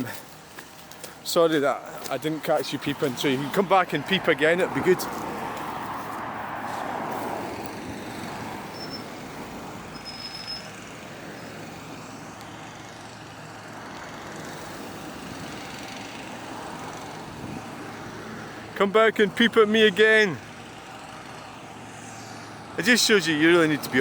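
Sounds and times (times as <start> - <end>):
vehicle passing: 0.0 - 10.0, 10.7 - 24.0
steady traffic noise: 0.0 - 24.0.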